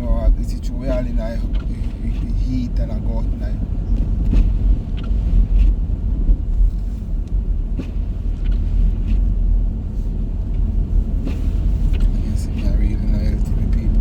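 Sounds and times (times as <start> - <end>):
car cabin road and engine rumble: 0.0 - 14.0.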